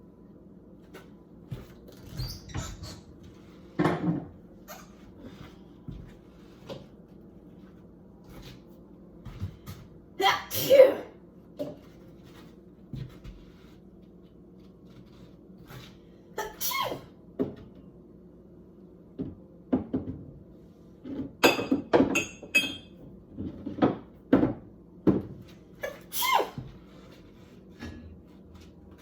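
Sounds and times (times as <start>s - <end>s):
dishes clinking: 21.4s - 23.0s.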